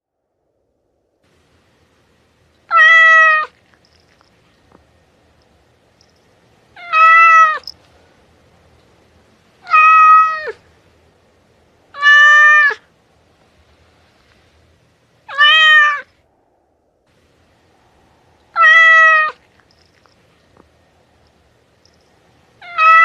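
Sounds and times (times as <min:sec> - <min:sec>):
cat meowing: 0:02.7 - 0:03.6, 0:06.8 - 0:07.7, 0:09.6 - 0:10.6, 0:11.9 - 0:12.8, 0:15.3 - 0:16.1, 0:18.5 - 0:19.5, 0:22.6 - 0:23.0.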